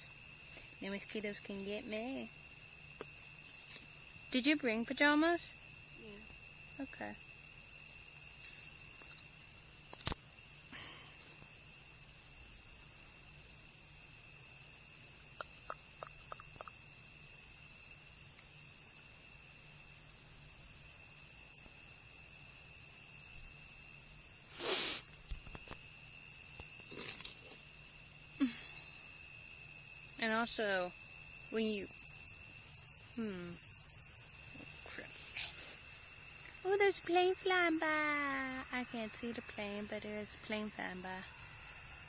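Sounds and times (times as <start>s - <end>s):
insect calling in short pulses: 0.0s - 13.0s, 14.3s - 17.2s, 24.3s - 36.9s
insect high-pitched trill: 0.0s - 42.0s
rustle: 2.4s - 4.3s, 7.8s - 12.9s, 24.3s - 29.1s.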